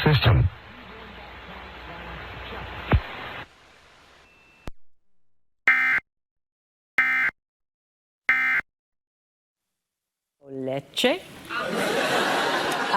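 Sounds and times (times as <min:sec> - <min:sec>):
steady hiss: 0:00.0 - 0:04.6.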